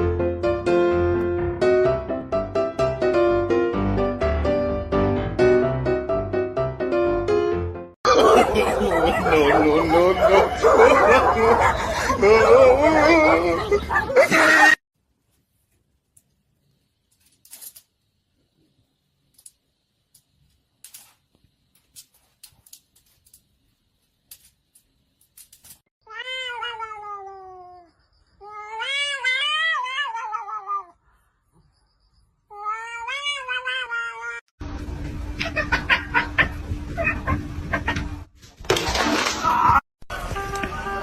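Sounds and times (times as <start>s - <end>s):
cat yowling: 26.1s - 31.0s, 32.5s - 34.4s.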